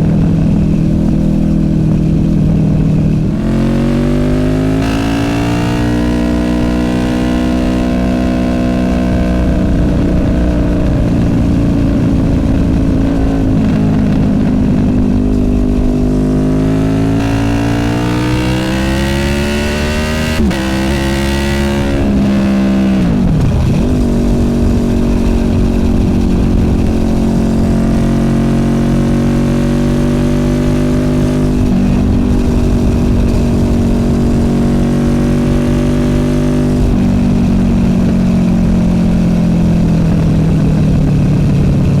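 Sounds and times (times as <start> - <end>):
motorcycle engine accelerating: 0.0 - 42.0.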